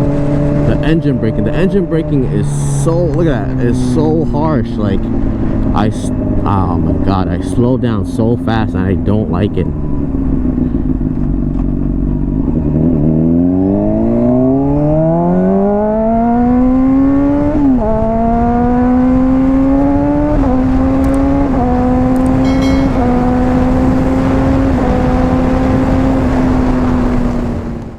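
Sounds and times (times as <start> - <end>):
motorcycle engine accelerating: 0.0 - 27.9
wind noise: 18.0 - 27.9.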